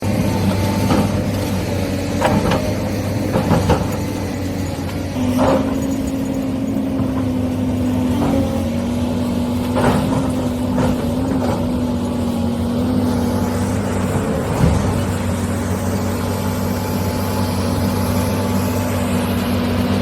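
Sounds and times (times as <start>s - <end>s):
toy excavator motors whining: 11.0s - 20.0s.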